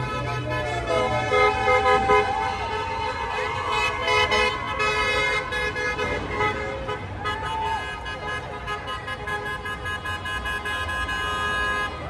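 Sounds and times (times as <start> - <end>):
rising and falling horn calls: 0.0 - 7.8
car horns honking: 0.0 - 12.0.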